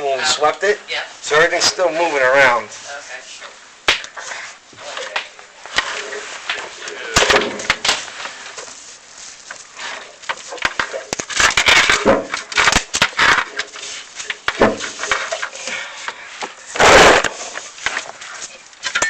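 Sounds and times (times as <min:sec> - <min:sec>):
scraping inside chimney flue: 0:00.0 - 0:19.0
sharp clicks and rustling: 0:09.4 - 0:19.0.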